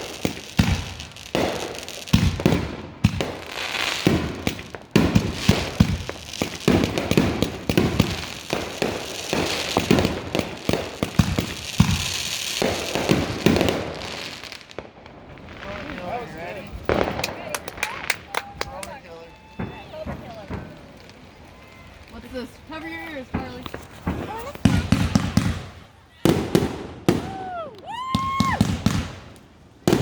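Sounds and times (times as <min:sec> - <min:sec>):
fireworks crackling hiss: 0:00.0 - 0:30.0
fireworks sharp bangs: 0:00.0 - 0:30.0.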